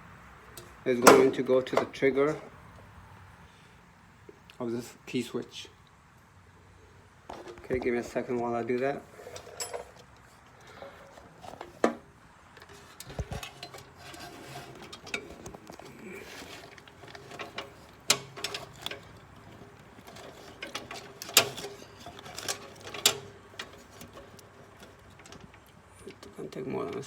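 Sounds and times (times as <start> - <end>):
clicks and light knocks: 7.2 - 27.0.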